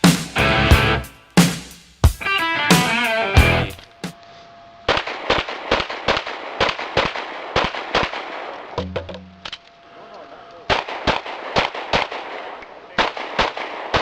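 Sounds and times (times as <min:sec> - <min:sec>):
pistol shots: 0:04.9 - 0:09.1, 0:10.7 - 0:14.0.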